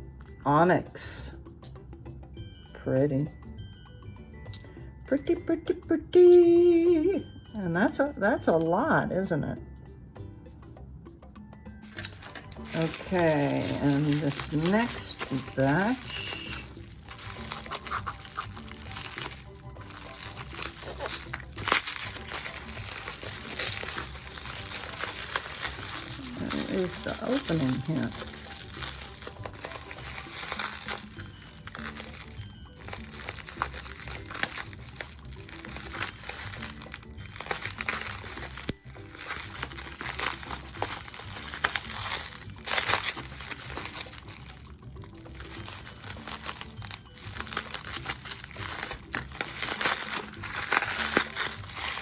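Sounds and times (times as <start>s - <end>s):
light background music: 0.0s - 52.0s
package wrapping crinkling and rustling: 11.8s - 52.0s.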